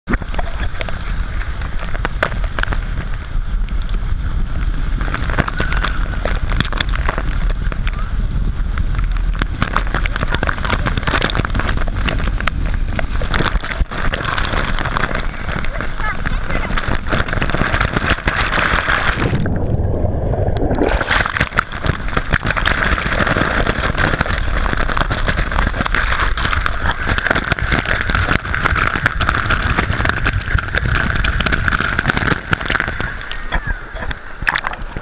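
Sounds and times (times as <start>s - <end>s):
whirlpool bath jets churning water: 20.2s - 35.0s.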